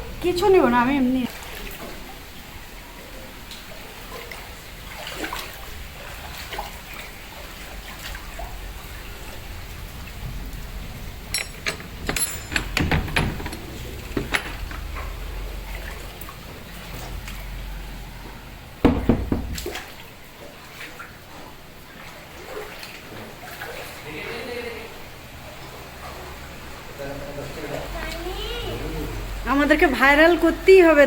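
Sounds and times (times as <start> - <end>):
floodwater sloshing and trickling: 0.0 - 11.4, 13.7 - 29.5.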